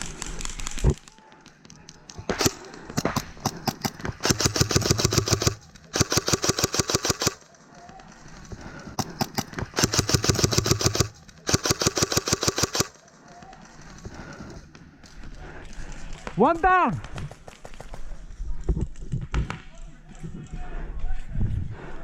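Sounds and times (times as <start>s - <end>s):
airsoft gun full-auto bursts: 2.3s - 7.5s, 9.0s - 13.0s.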